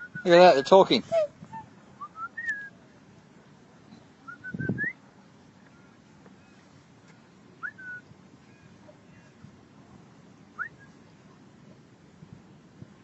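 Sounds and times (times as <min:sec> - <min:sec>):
swans calling: 0:00.6 - 0:01.8.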